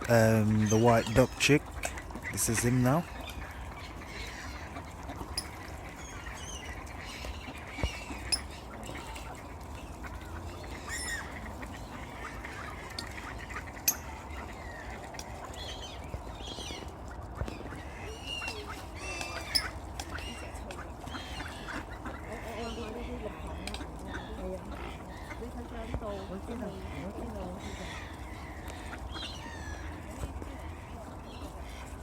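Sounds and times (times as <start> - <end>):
ducks quacking: 0.0 - 32.0.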